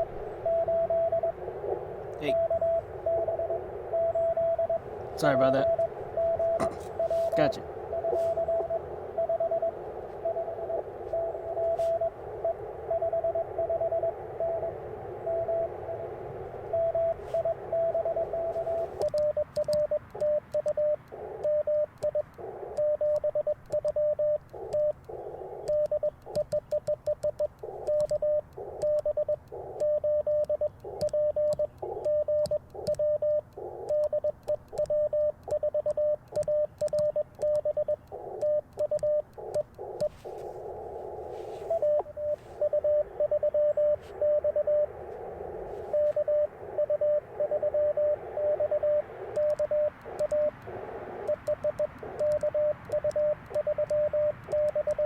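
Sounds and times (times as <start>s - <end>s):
radio band hiss: 0.0s - 19.4s, 20.0s - 26.6s, 27.5s - 35.5s, 37.9s - 55.0s
morse code tone: 0.0s - 55.0s
morse sidetone: 25.6s - 55.0s.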